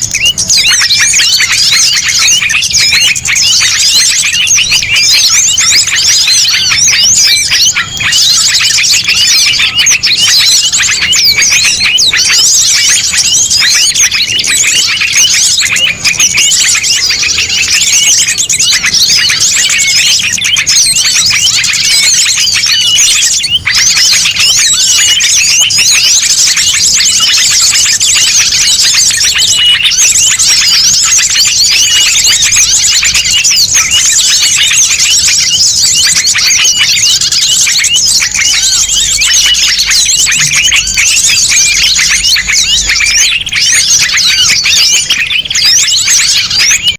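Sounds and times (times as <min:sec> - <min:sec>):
songbirds chirping and twittering: 0:00.0 - 0:46.9.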